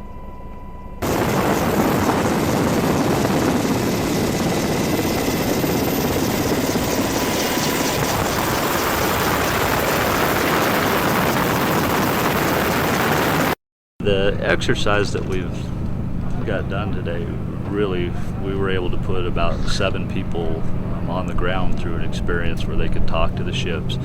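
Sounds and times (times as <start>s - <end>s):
helicopter rotor and turbine: 1.0s - 13.6s.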